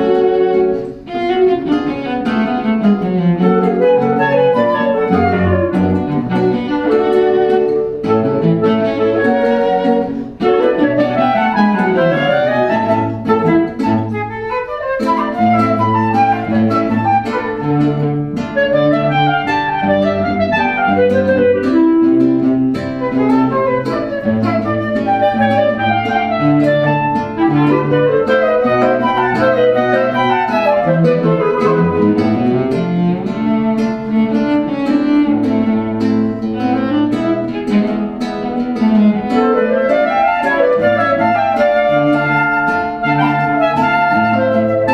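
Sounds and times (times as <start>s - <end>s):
instrumental ensemble music: 0.0s - 44.9s.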